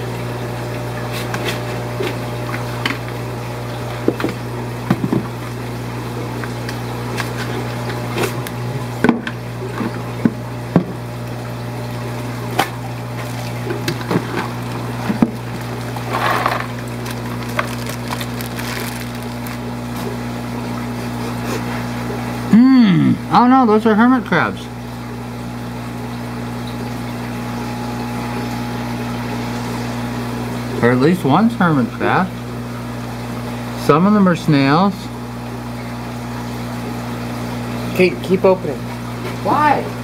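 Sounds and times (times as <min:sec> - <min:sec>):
steady low hum: 0:00.0 - 0:40.0
rustling or splashing burst: 0:12.6 - 0:20.1.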